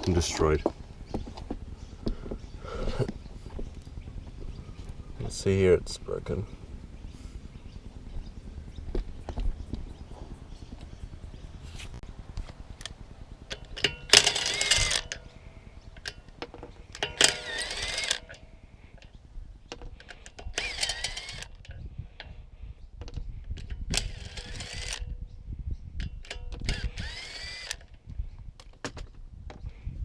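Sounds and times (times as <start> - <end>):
power tool motor bursts: 13.6 - 15.3, 17.0 - 18.4, 20.5 - 21.6, 23.9 - 25.0, 26.5 - 27.9.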